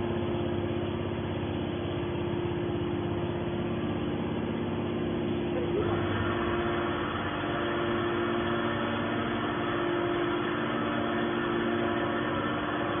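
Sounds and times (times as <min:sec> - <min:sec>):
hydraulic baler humming: 0:05.3 - 0:13.0.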